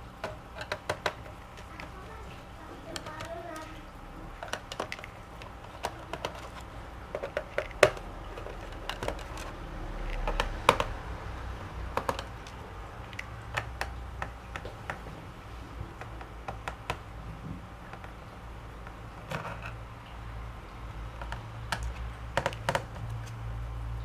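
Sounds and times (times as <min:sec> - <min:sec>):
screwdriver and screws clicking: 0:00.2 - 0:02.2, 0:02.9 - 0:03.8, 0:04.4 - 0:10.9, 0:12.0 - 0:15.0.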